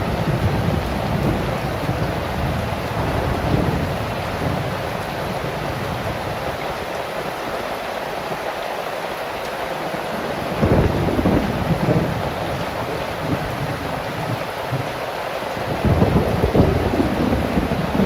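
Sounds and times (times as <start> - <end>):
low thunder rumble: 0.0 - 6.4, 10.4 - 15.0, 15.6 - 18.0
heavy rain falling: 0.0 - 18.0.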